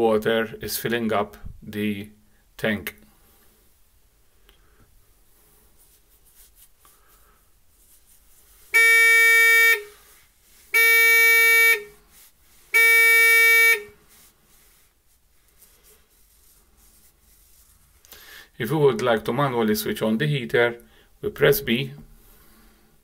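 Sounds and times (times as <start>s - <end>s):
electronic buzzer beeps: 10.8s - 11.9s, 12.8s - 13.9s.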